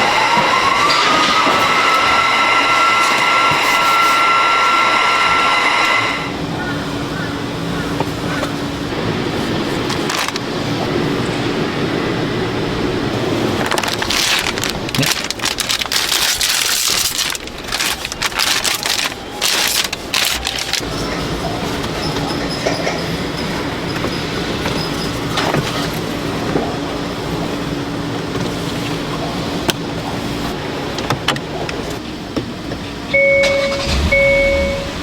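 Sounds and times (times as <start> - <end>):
steady machine hum: 0.0 - 22.0, 32.0 - 35.0
machinery clattering and hissing: 0.0 - 35.0.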